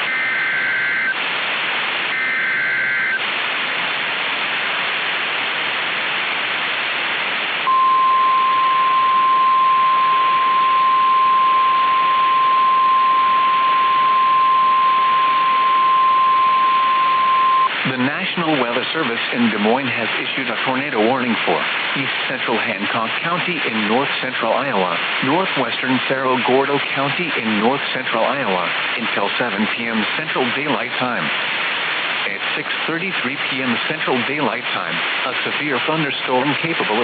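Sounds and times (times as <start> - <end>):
steady warning alarm tone: 0.0 - 1.2, 2.1 - 3.2, 7.7 - 17.7
radio static: 0.0 - 37.0.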